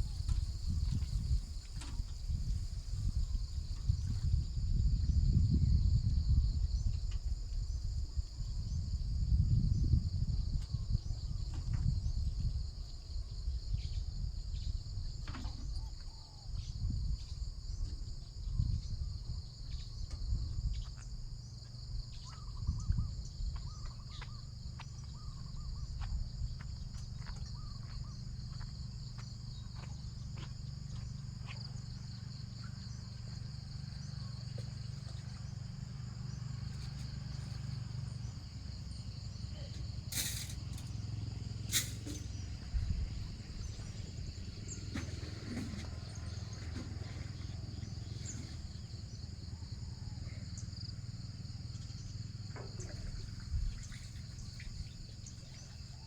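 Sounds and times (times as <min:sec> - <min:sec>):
insects chirring: 0:00.0 - 0:56.0.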